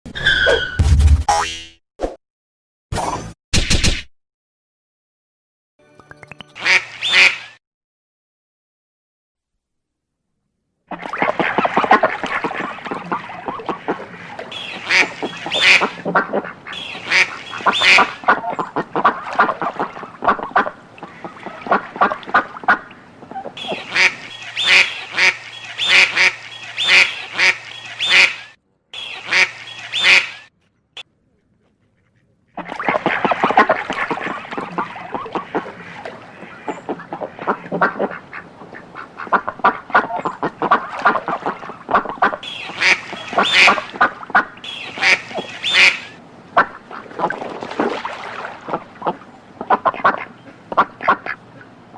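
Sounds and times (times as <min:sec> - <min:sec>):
ducks quacking: 0:06.6 - 0:07.5, 0:11.4 - 0:51.8.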